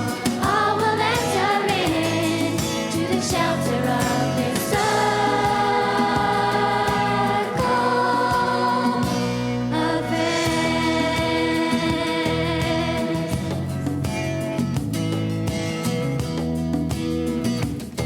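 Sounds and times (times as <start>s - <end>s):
youth choir singing: 0.0s - 13.6s
instrumental accompaniment: 0.0s - 18.0s.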